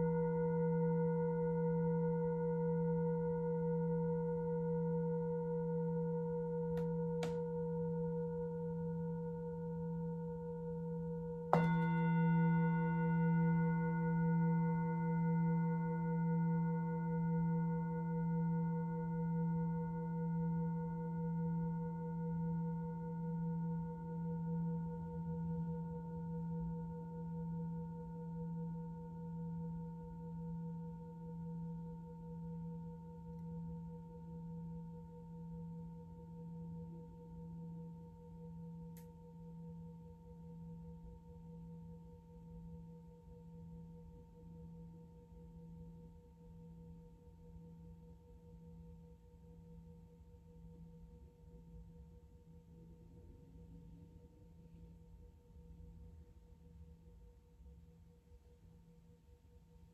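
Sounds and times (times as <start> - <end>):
singing bowl ringing: 0.0 - 25.9.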